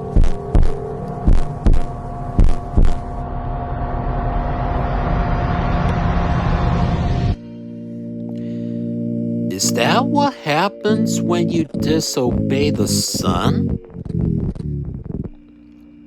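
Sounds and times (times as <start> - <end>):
heartbeat-like thumps: 0.0 - 3.1
electronic drone: 0.0 - 16.0
rumbling swell: 0.8 - 9.5.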